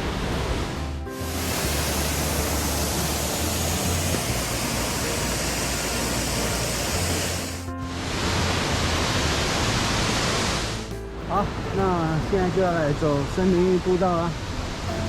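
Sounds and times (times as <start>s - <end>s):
waterfall roaring: 0.0s - 10.8s.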